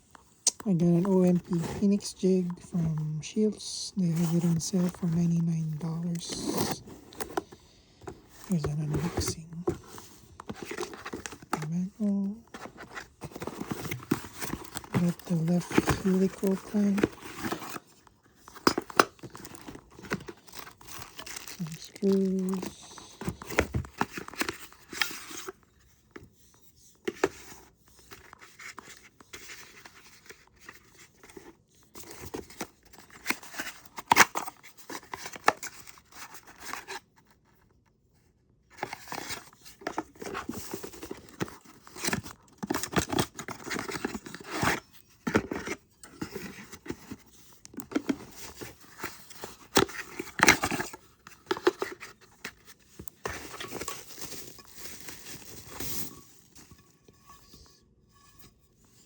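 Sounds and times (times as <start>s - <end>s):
packaging crinkling and tearing: 8.8s - 25.6s.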